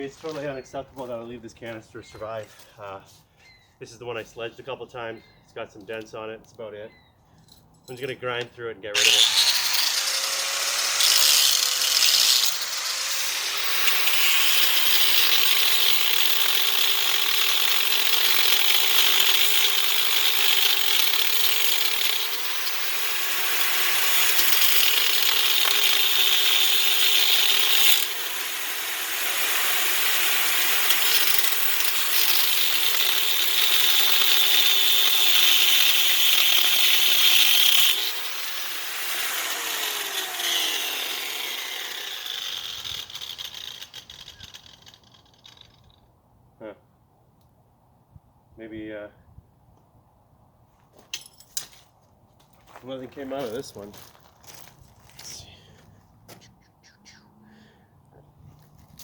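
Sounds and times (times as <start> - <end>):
grinder cutting metal canister: 9.0 - 45.9.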